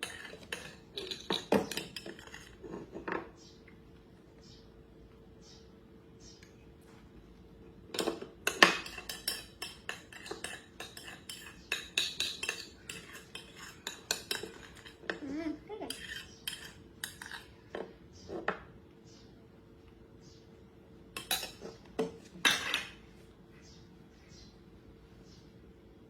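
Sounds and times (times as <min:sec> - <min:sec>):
spoon scraping a bowl: 0:00.0 - 0:03.5, 0:08.0 - 0:18.7, 0:21.1 - 0:23.0.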